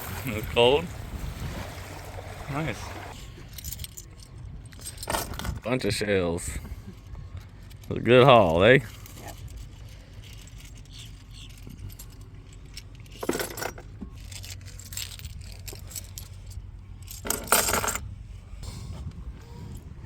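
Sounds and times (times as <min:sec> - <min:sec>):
seashells clinking and rattling: 0:03.4 - 0:05.6, 0:07.6 - 0:18.0.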